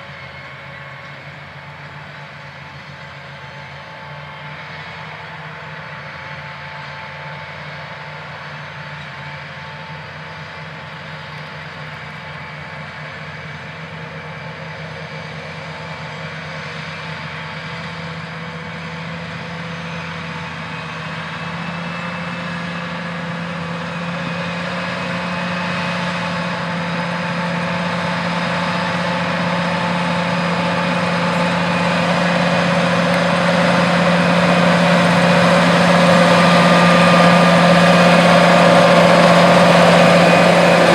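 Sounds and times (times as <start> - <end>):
tractor diesel engine running: 0.0 - 40.9.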